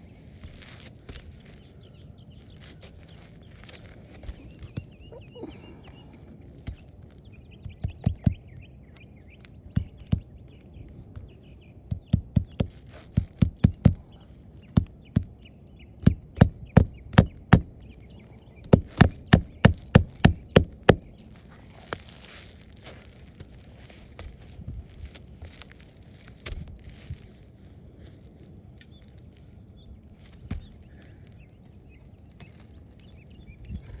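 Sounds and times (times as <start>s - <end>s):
hammer hitting nails: 18.7s - 21.0s.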